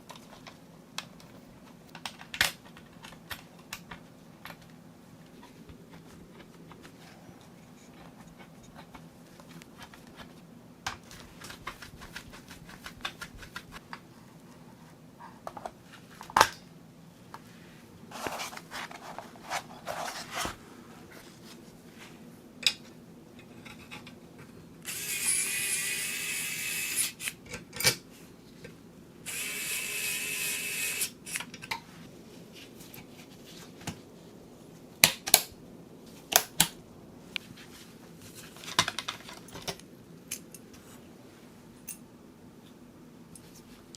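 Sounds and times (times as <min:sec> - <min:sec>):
clicks and knocks of parts handled: 0:00.0 - 0:04.8, 0:38.6 - 0:40.8
electric screwdriver whirring: 0:24.9 - 0:27.4, 0:29.3 - 0:31.2.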